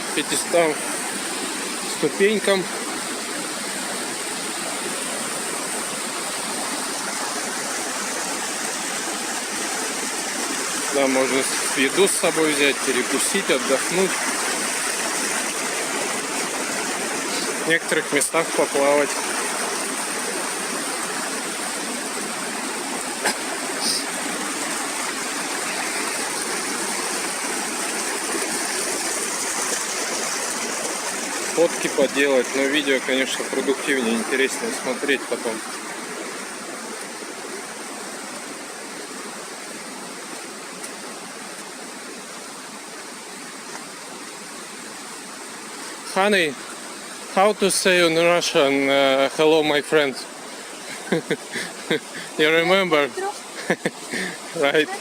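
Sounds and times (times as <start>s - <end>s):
rush of flowing water: 0.0s - 55.0s.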